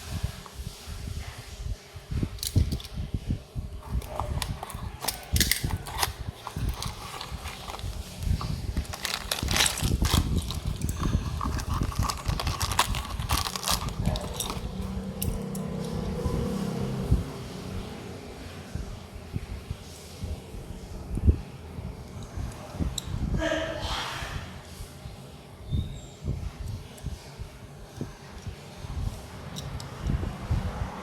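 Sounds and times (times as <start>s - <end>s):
steady low hum: 0.0s - 31.0s
toy cars clicking and rattling: 2.4s - 3.0s, 3.8s - 15.8s
packaging being handled: 3.8s - 15.4s.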